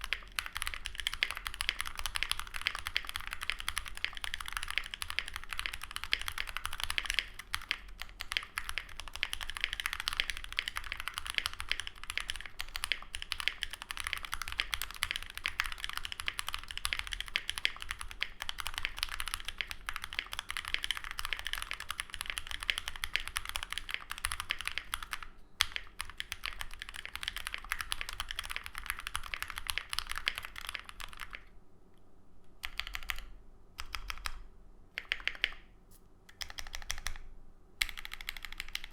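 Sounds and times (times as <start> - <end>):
typing on mechanical keyboard: 0.0 - 31.5, 32.6 - 35.6, 36.3 - 38.9.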